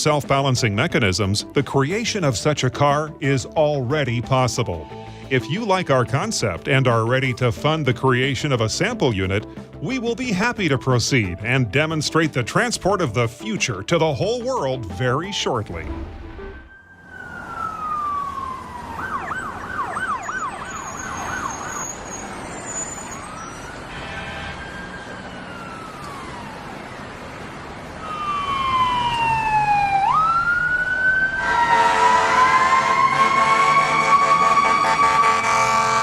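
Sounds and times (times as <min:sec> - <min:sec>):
emergency vehicle sirens: 0:00.0 - 0:10.6, 0:15.7 - 0:36.0
louder fuller siren: 0:16.4 - 0:36.0.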